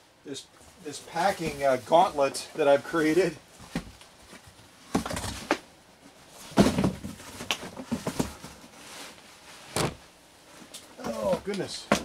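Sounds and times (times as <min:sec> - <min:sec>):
cardboard boxes knocking and scraping: 0:06.4 - 0:08.7.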